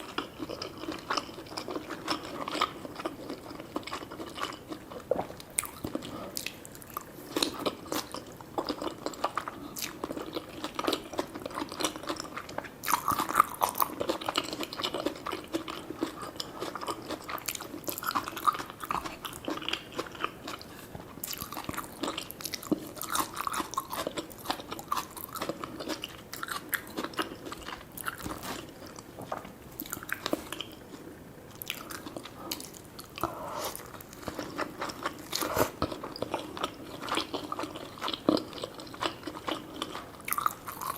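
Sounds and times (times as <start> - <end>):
close chewing and biting food: 0.0 - 40.9.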